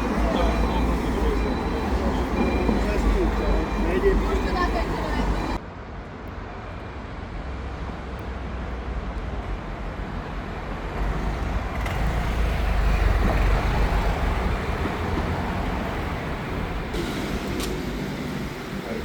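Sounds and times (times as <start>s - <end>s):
vehicle rumble passing: 11.0s - 19.0s.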